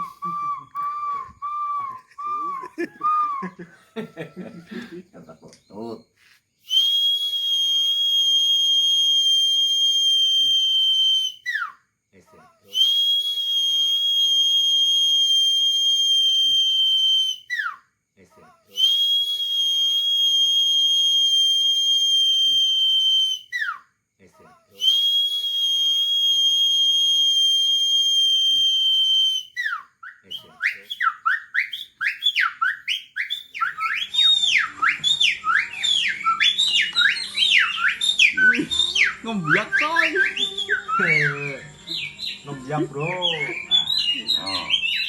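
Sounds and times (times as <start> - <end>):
man whistling birdsong imitations: 0.0 - 3.7, 5.4 - 11.9, 12.7 - 17.9, 18.7 - 23.9, 24.7 - 45.0.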